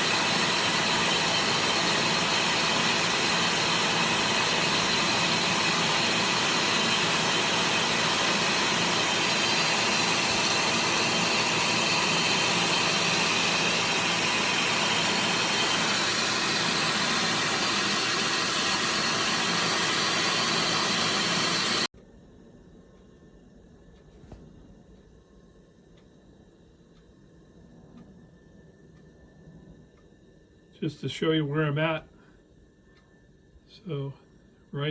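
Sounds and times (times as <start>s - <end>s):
hissing metal cutting: 0.0s - 21.9s
milling machine drone: 0.0s - 21.9s.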